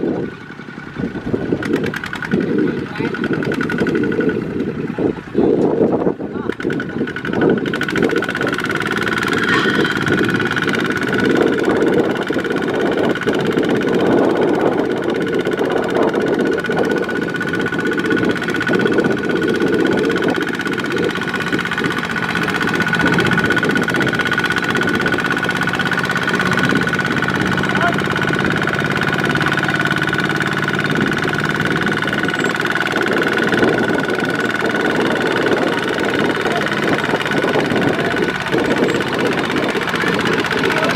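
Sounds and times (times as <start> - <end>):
diesel engine running: 0.0 - 40.9
high whine: 8.8 - 12.1.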